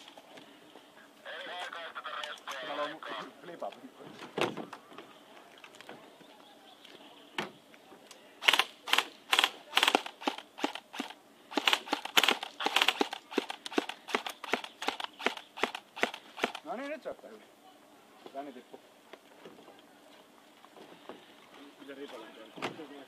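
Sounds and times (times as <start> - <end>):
airsoft guns firing: 8.4 - 16.7.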